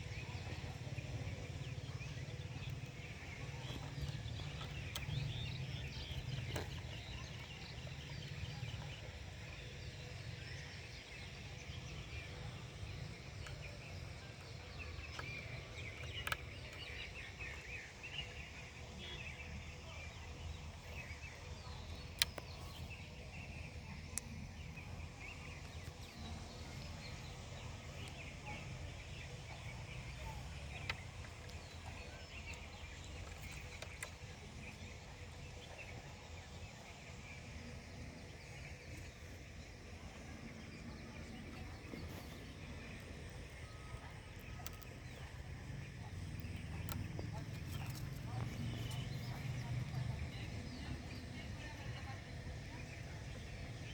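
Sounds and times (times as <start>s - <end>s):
birds chirping: 0.0s - 53.9s
low outdoor background rumble: 0.0s - 53.9s.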